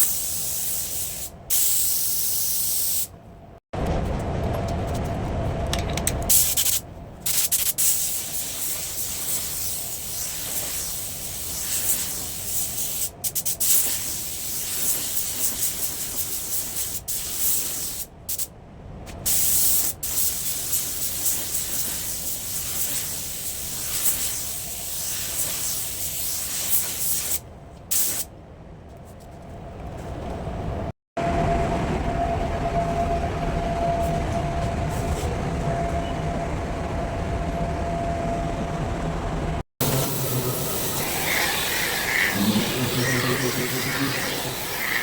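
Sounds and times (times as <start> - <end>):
paint spray gun hissing: 0.0 - 3.1, 6.3 - 18.1, 19.3 - 28.2, 39.8 - 45.0.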